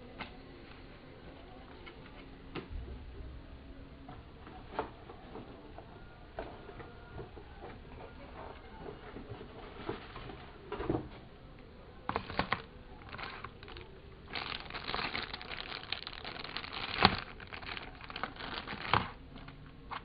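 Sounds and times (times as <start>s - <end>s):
packaging rustling and crinkling: 12.0s - 20.0s.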